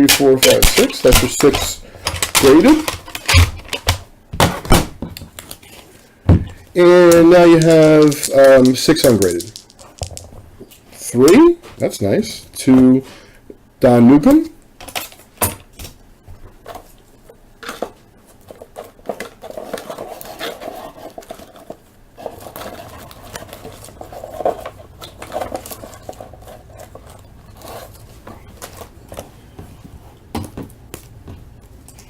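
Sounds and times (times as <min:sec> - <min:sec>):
cards rustling: 0:00.0 - 0:04.0, 0:04.6 - 0:10.3, 0:17.7 - 0:30.0.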